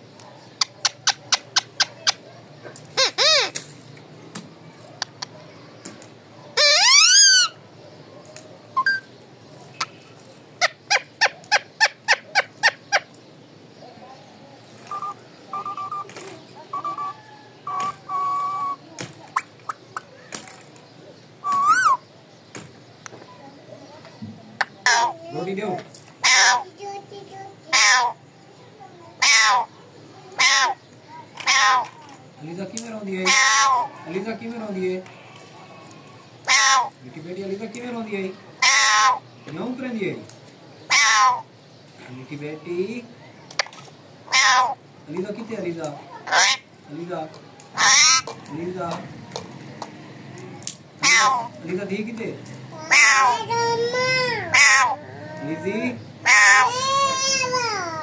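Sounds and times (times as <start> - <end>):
parakeet squawking and screeching: 3.0 - 3.6, 6.6 - 7.6, 8.8 - 9.1, 16.7 - 18.8, 21.4 - 22.0, 24.7 - 25.2, 26.2 - 26.7, 27.7 - 28.2, 29.2 - 29.7, 30.4 - 30.8, 31.4 - 31.9, 33.2 - 34.0, 36.4 - 37.0, 38.6 - 39.3, 40.9 - 41.5, 44.3 - 44.8, 46.2 - 46.7, 47.7 - 48.4, 51.0 - 51.6, 52.8 - 55.0, 56.2 - 58.0
parrot harsh calls: 3.0 - 3.6, 6.6 - 7.6, 8.8 - 9.1, 10.6 - 13.1, 16.7 - 18.8, 21.4 - 22.0, 24.6 - 25.3, 26.2 - 26.7, 27.7 - 28.2, 29.2 - 29.8, 30.4 - 30.8, 31.4 - 31.9, 33.2 - 34.1, 35.6 - 37.0, 38.6 - 39.3, 40.9 - 41.5, 44.2 - 44.9, 46.1 - 46.7, 47.7 - 48.4, 51.0 - 51.6, 52.7 - 55.6, 56.2 - 58.0.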